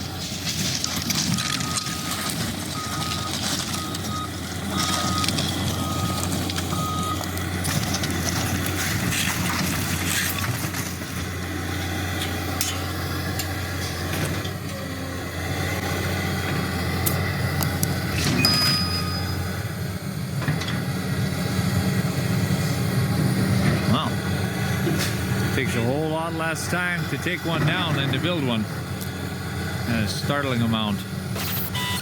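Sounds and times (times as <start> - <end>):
diesel engine running: 0.0 - 32.0
short high alarm beeps: 31.4 - 32.0.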